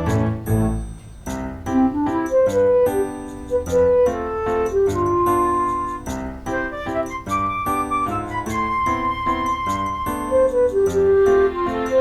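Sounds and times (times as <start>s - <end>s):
instrumental background music: 0.0s - 12.0s.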